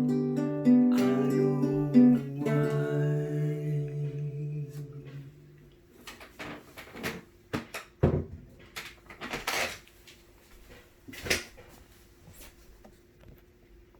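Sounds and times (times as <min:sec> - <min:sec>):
faint steady tone: 0:00.0 - 0:05.9.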